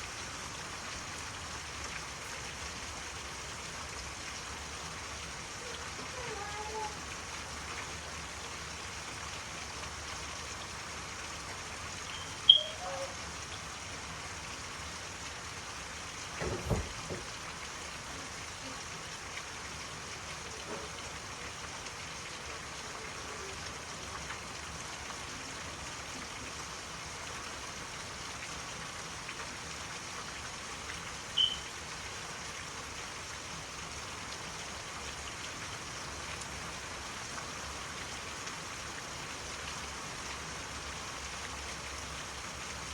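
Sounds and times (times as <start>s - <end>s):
steady rain hiss: 0.0s - 42.9s
low thump: 16.4s - 17.3s.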